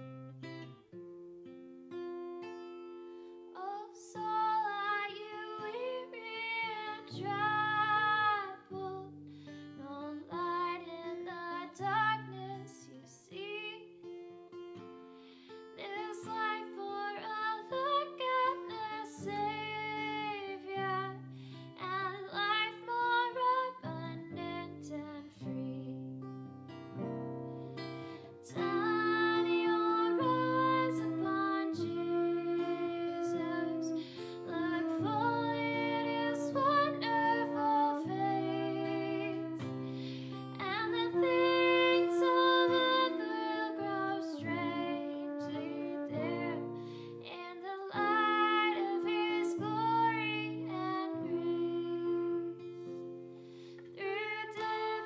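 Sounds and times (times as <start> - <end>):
acoustic guitar: 0.0 - 55.0
person singing with vibrato: 28.1 - 52.7.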